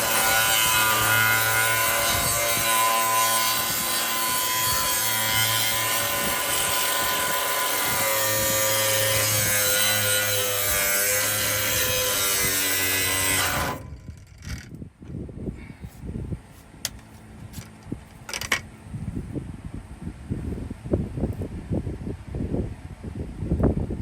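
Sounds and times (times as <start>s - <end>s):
power tool cutting metal: 0.0s - 14.0s.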